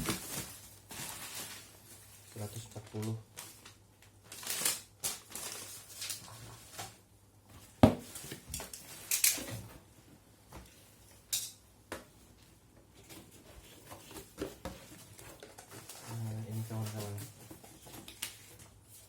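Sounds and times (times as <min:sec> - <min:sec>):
packaging rustling: 0:00.0 - 0:07.0.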